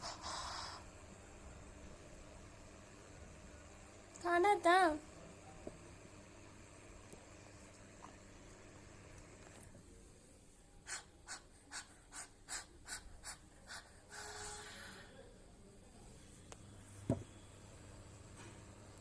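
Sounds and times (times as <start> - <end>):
low thump: 17.1 - 17.3.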